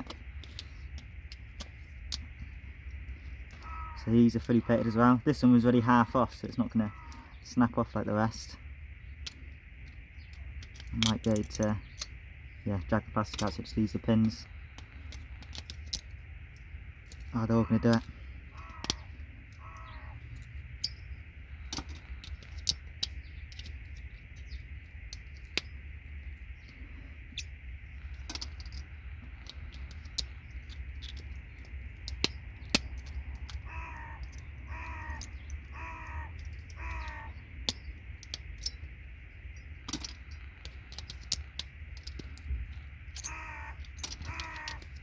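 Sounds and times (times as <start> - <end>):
bird calling: 0.0 - 45.0
steady low hum: 0.0 - 45.0
plastic and metal clicks and snaps: 43.1 - 45.0.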